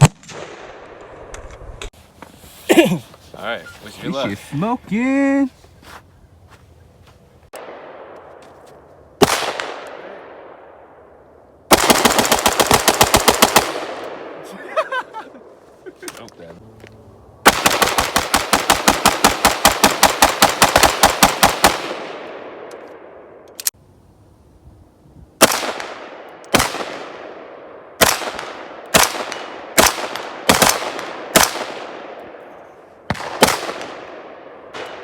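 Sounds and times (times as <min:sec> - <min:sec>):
pistol gunshots echoing: 0:28.0 - 0:32.2, 0:33.1 - 0:35.0.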